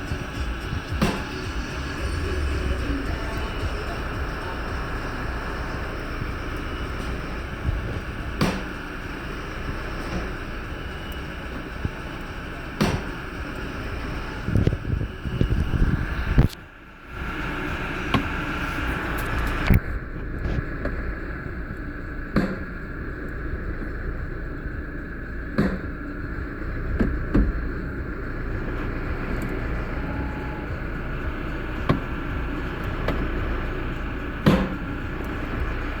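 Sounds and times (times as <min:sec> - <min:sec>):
transmission clunking: 0:00.0 - 0:36.0
vehicle engine rumble: 0:00.0 - 0:36.0.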